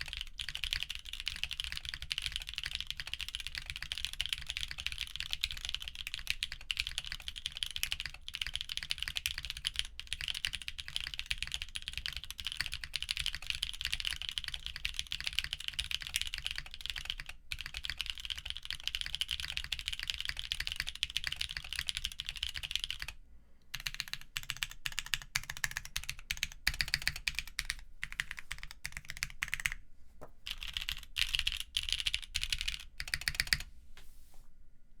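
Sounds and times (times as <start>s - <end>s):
typing on mechanical keyboard: 0.0s - 29.8s, 30.5s - 33.7s.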